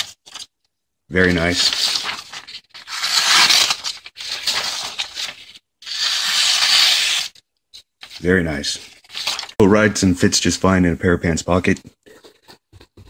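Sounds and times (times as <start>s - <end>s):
knife slicing through paper: 1.5s - 7.3s.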